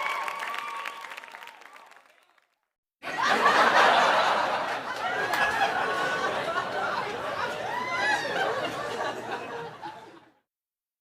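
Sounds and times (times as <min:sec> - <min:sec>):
crowd applause and cheering: 0:00.0 - 0:09.7
audience laughing: 0:03.0 - 0:10.4.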